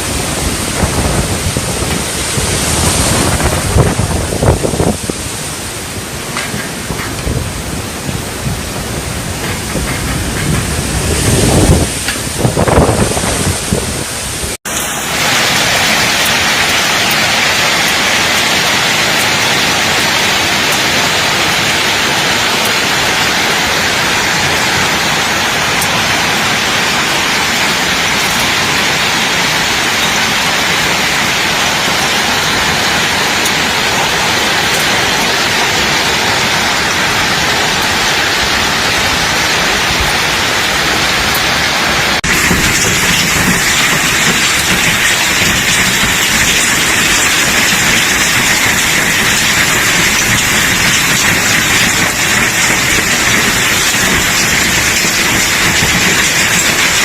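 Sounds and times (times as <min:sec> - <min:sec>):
wind buffeting microphone: 0:00.0 - 0:14.6, 0:29.5 - 0:57.0
heavy rain downpour: 0:00.0 - 0:57.0.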